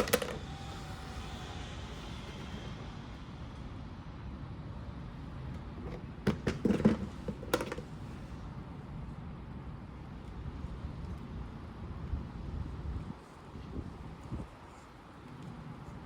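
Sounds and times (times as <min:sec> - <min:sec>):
hard objects knocking and clattering: 0:00.0 - 0:00.4, 0:05.9 - 0:07.9
steady low rumble: 0:00.0 - 0:06.2.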